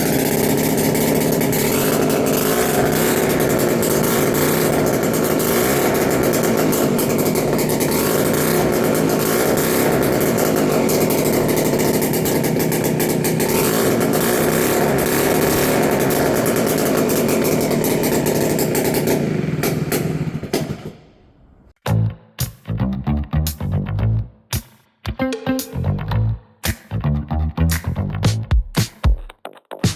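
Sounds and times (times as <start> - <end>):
two-stroke scooter engine running: 0.0 - 21.6.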